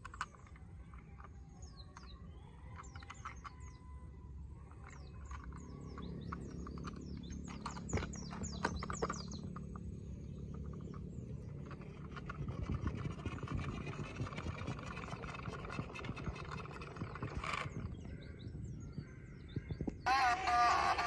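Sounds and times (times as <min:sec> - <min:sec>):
birds chirping: 0:00.0 - 0:21.0
low rattling scraping crackle: 0:04.9 - 0:20.0.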